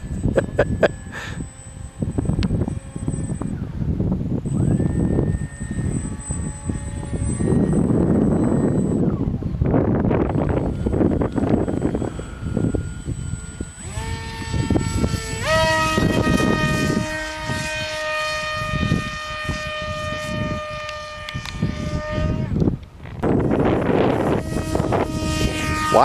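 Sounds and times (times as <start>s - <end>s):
model aircraft motor whining: 0.0s - 26.0s
wind buffeting microphone: 0.0s - 26.0s.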